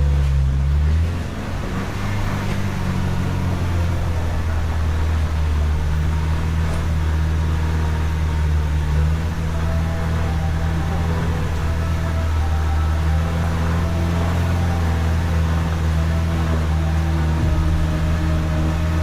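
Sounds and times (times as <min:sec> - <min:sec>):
car engine droning while driving: 0:00.0 - 0:19.0.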